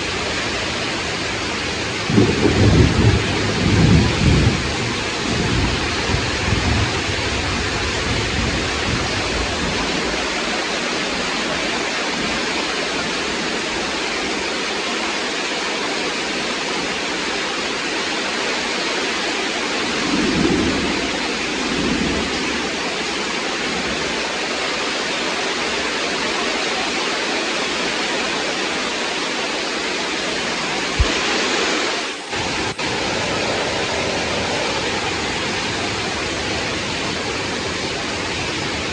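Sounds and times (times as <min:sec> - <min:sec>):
low thunder rumbles: 0:00.0 - 0:14.0, 0:19.8 - 0:24.4
heavy rain falling: 0:00.0 - 0:38.9.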